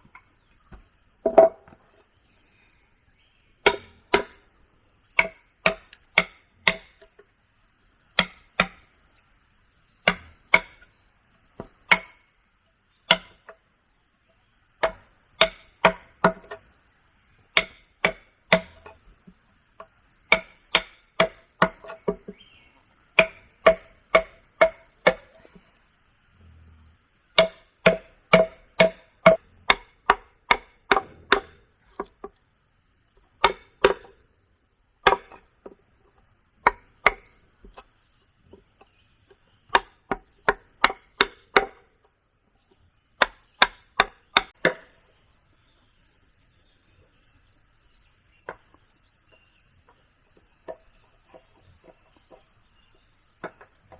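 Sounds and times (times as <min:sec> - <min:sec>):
hand tool striking wood: 0:00.1 - 0:01.8, 0:03.6 - 0:04.4, 0:05.2 - 0:07.2, 0:08.2 - 0:08.8, 0:10.1 - 0:10.8, 0:11.6 - 0:12.2, 0:13.1 - 0:13.6, 0:14.8 - 0:16.7, 0:17.5 - 0:19.0, 0:19.8 - 0:22.4, 0:23.2 - 0:25.6, 0:27.4 - 0:32.3, 0:33.4 - 0:34.2, 0:35.0 - 0:35.8, 0:36.6 - 0:37.8, 0:39.7 - 0:41.9, 0:43.2 - 0:45.0.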